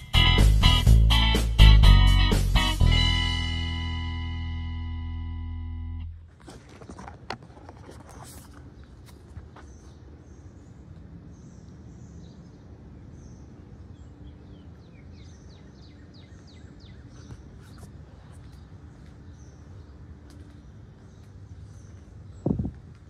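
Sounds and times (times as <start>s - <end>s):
birds chirping: 6.5s - 23.0s.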